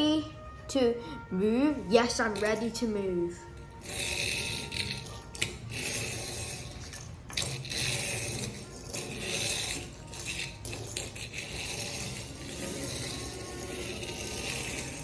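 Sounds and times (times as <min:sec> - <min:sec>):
toy train rolling rattle: 0:03.6 - 0:15.0.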